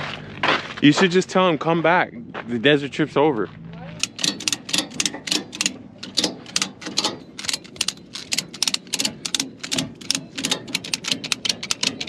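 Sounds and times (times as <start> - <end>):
sharp mechanical clicks: 4.0 - 12.0.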